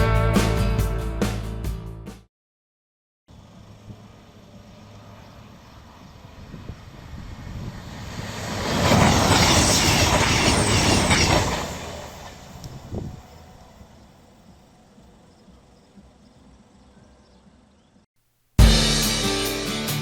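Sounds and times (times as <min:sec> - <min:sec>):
high-speed train passing: 0:03.3 - 0:15.2.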